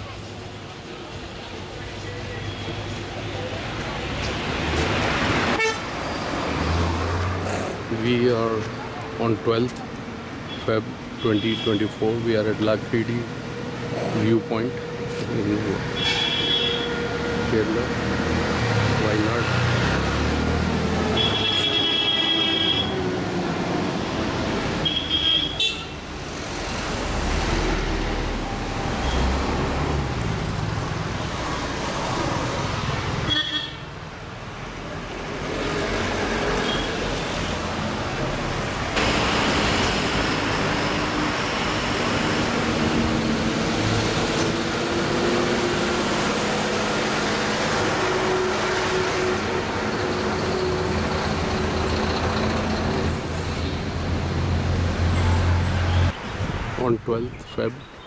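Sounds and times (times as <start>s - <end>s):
road traffic passing: 0.0s - 58.0s
car horn honking: 5.5s - 5.9s, 16.0s - 17.0s, 21.1s - 23.0s, 24.8s - 26.0s, 33.3s - 33.9s.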